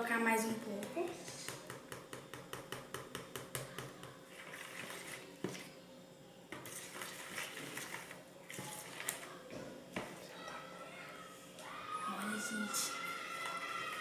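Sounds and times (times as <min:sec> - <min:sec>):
stirring slime in a bowl: 0:00.4 - 0:05.8, 0:06.5 - 0:11.7.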